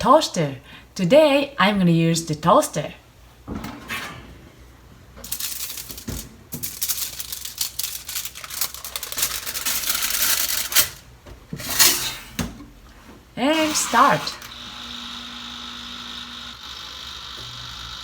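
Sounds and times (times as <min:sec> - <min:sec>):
aluminium foil crinkling: 0:05.2 - 0:11.0.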